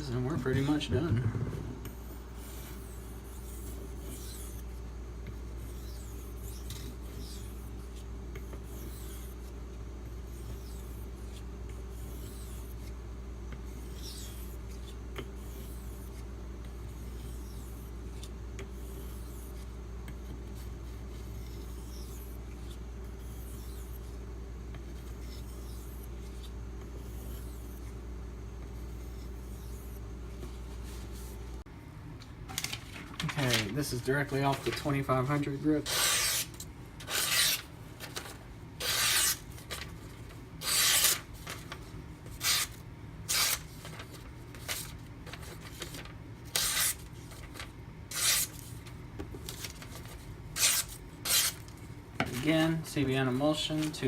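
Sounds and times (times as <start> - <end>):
steady low hum: 0.0 - 54.0
knife rasping on whetstone: 21.4 - 24.1.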